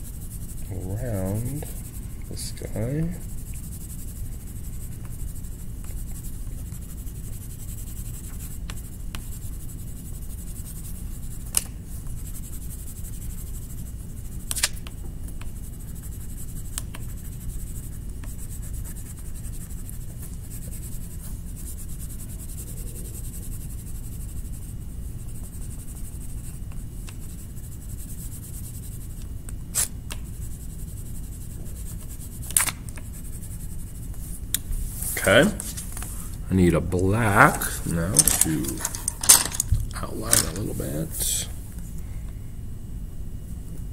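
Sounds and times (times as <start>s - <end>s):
colouring on paper: 0.1s - 11.5s, 12.1s - 14.4s, 15.5s - 26.6s.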